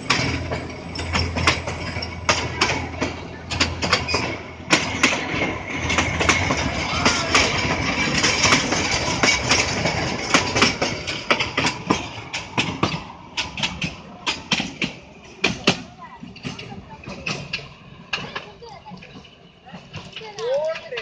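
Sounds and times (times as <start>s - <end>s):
train rumbling on rails: 0.0s - 21.0s
wheels clicking and knocking: 0.0s - 21.0s.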